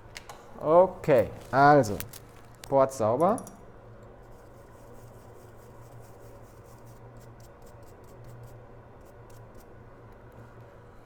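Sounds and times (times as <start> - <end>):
steady low hum: 0.0 - 7.3.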